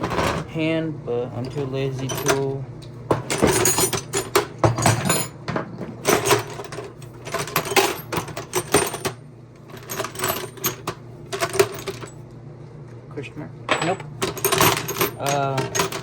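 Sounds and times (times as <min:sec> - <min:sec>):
metal hand tools clinking: 0:13.7 - 0:16.0.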